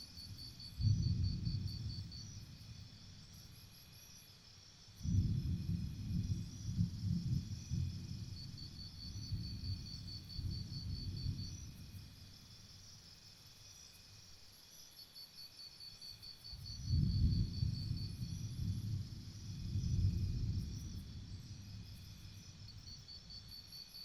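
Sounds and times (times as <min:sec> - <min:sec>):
insects chirping trill: 0:00.0 - 0:24.0
low rumbling noise in gusts: 0:00.2 - 0:03.4, 0:05.0 - 0:12.5, 0:16.6 - 0:23.6.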